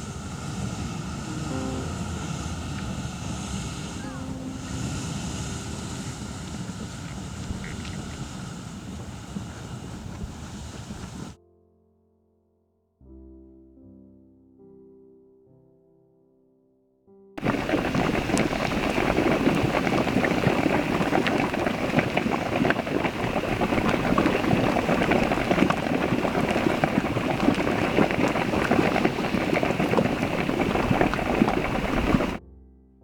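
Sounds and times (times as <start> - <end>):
water bubbling and splashing: 17.4 - 32.4.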